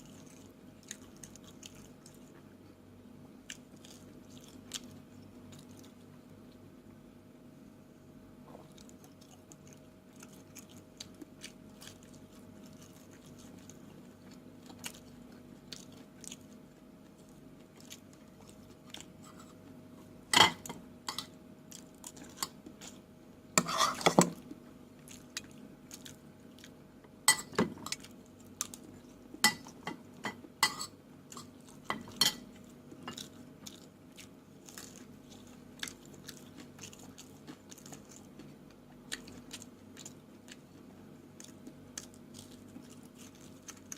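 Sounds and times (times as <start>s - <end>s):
chewing: 0.0s - 2.5s, 3.4s - 6.1s, 8.6s - 19.7s, 21.1s - 23.1s, 23.7s - 26.8s, 27.8s - 30.6s, 31.3s - 43.9s
faint steady hum: 0.0s - 43.9s.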